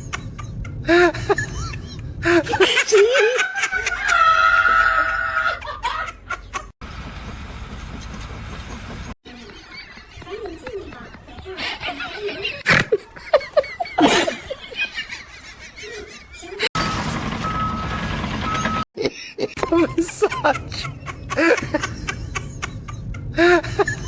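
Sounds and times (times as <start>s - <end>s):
people laughing: 0.2s - 6.7s, 9.3s - 16.8s, 19.0s - 24.0s.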